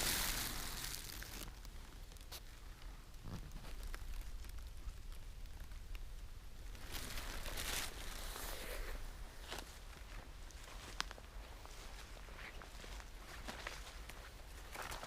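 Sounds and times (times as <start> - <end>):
footsteps through fallen leaves: 0.0 - 1.5, 6.8 - 15.0.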